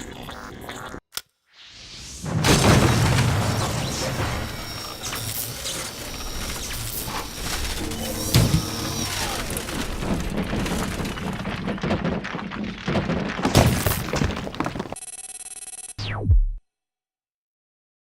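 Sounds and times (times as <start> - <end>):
falling power-down whine: 1.7 - 10.3
loud impact: 2.2 - 5.0
steady electronic buzz: 3.6 - 10.0
crashing and clattering: 6.4 - 15.0.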